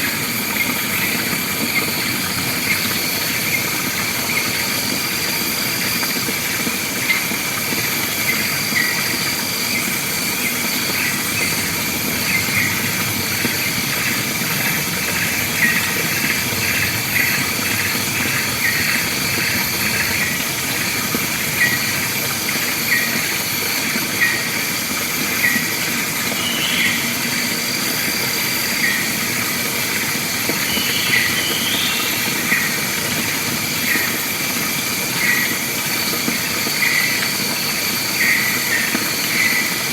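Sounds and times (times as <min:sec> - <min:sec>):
high-pitched insect drone: 0:07.9 - 0:34.5.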